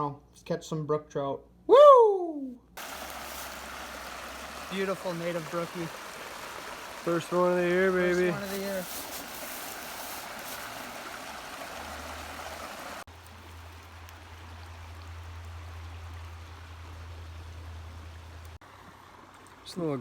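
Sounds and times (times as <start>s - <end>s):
creek water rushing over rocks: 2.8s - 19.6s
low steady hum: 13.1s - 19.6s.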